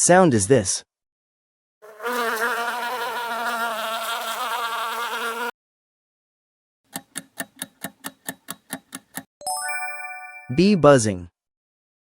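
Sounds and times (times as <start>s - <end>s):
bee buzzing: 1.8s - 5.5s.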